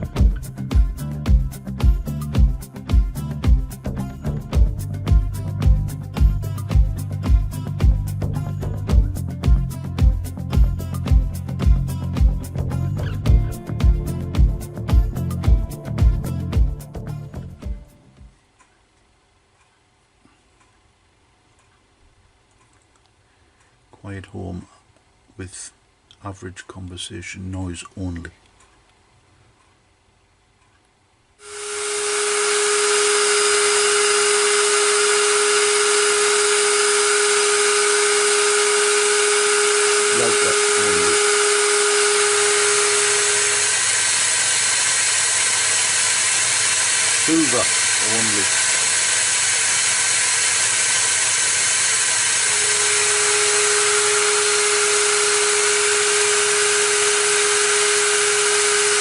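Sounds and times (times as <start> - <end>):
electric motor spinning: 10.7 - 17.5, 31.4 - 59.0
vacuum cleaner running: 31.4 - 59.0.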